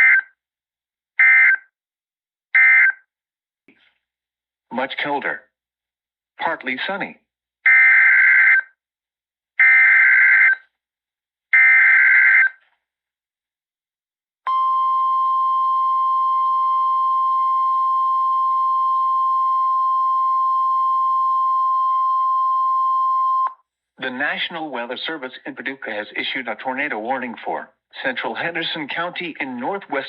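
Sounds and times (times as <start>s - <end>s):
steady warning alarm tone: 14.5s - 23.5s.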